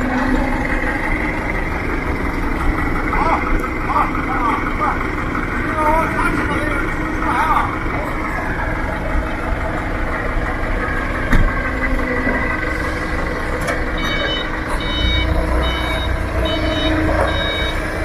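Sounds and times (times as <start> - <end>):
heavy vehicle engine running: 0.0 - 18.0
reversing alarm beeping: 9.6 - 18.0.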